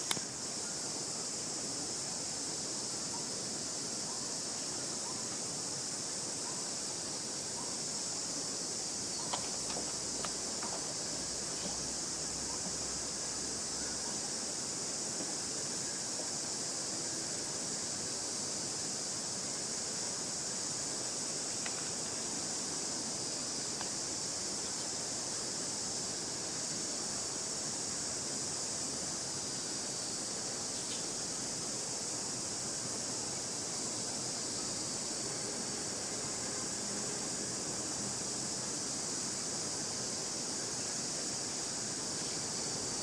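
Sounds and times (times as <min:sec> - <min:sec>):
faint ticks: 0:00.0 - 0:00.3, 0:09.2 - 0:10.9, 0:21.5 - 0:22.2, 0:23.7 - 0:24.0
outdoor background hiss: 0:00.0 - 0:43.0.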